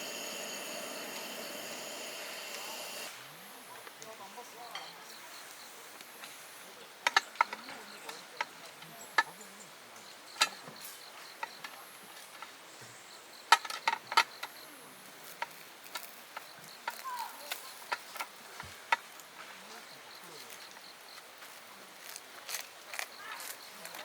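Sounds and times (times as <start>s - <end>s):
insect buzzing: 0.0s - 3.3s.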